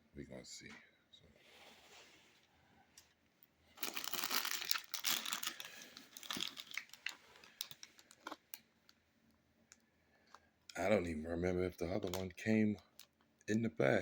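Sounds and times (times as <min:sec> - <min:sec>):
plastic bag crinkling: 0:03.8 - 0:08.6.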